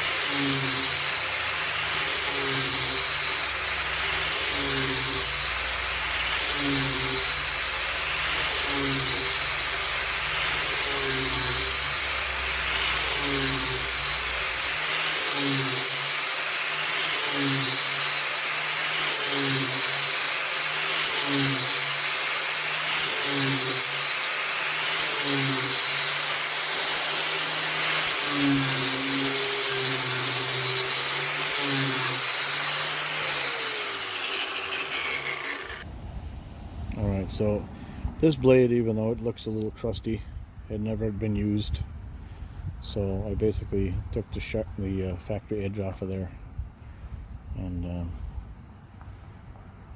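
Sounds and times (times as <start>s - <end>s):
angle grinder grinding metal: 0.0s - 35.9s.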